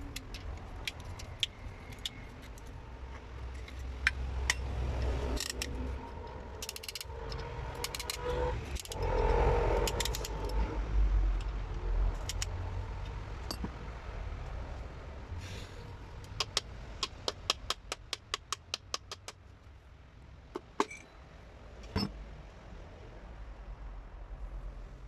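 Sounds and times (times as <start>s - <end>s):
low rumble: 2.7s - 15.4s.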